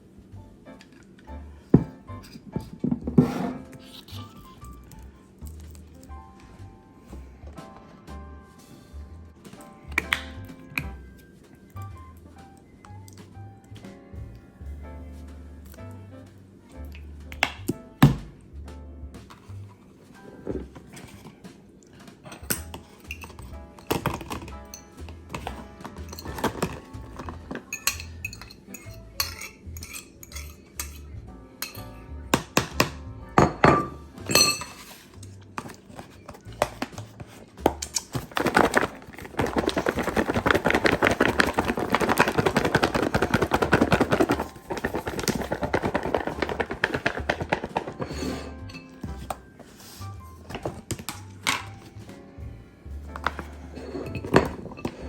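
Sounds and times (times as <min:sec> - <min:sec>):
background music: 0:00.0 - 0:55.0
dishes clattering and scraping: 0:01.7 - 0:04.3, 0:22.0 - 0:31.9, 0:33.4 - 0:49.7, 0:53.1 - 0:55.0
cutlery and dishes clinking: 0:20.2 - 0:43.3, 0:43.9 - 0:49.4, 0:53.1 - 0:55.0.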